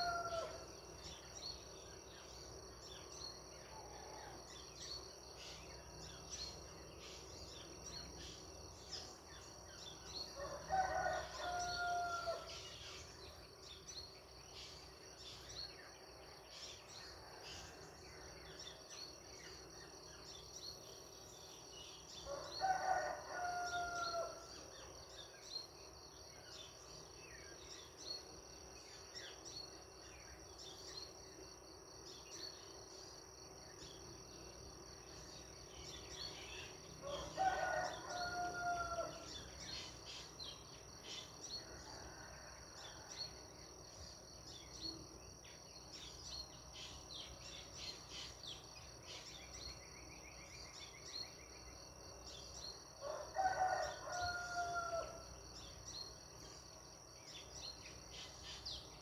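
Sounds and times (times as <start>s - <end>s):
rooster crowing: 0.0s - 0.6s, 10.4s - 12.6s, 22.3s - 24.5s, 37.0s - 39.4s, 53.0s - 55.3s
high insect trill: 0.0s - 59.0s.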